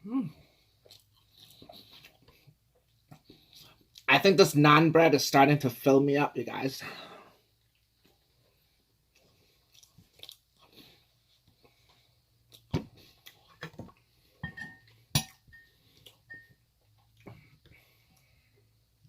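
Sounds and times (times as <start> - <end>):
close-miked chewing: 0.4 - 4.1, 7.6 - 14.3.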